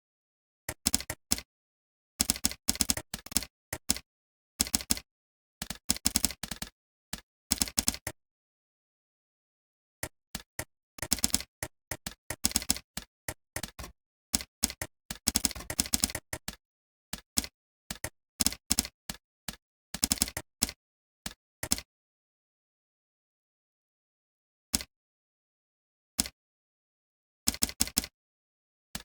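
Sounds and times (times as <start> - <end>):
keyboard key clicks: 11.0 - 16.6.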